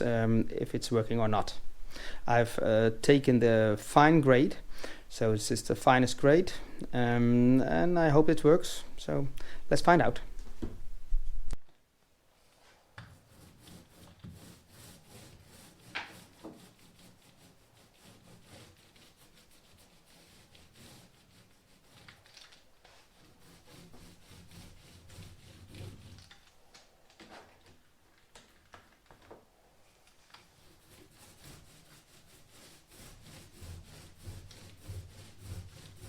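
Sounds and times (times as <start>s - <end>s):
rubbing and scraping on hull: 13.1s - 26.5s, 30.4s - 36.0s.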